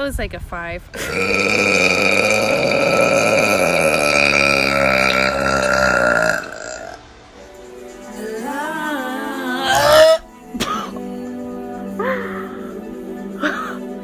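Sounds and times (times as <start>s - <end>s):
loud human burp: 1.0s - 7.0s, 9.6s - 11.0s
wavering vocal sound: 1.0s - 14.0s.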